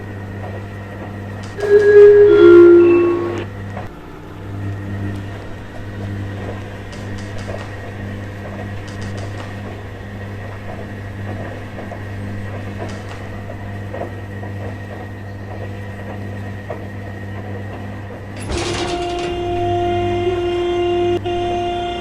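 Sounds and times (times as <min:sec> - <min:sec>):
steady tone with overtones: 0:01.6 - 0:03.5
washing machine humming: 0:04.4 - 0:22.0.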